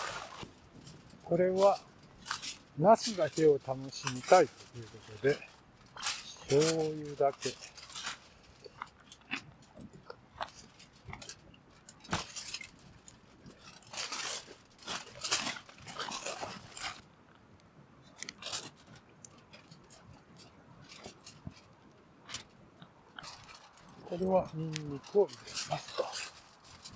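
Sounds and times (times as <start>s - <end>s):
aluminium foil crinkling: 0.0s - 17.1s, 18.0s - 26.9s.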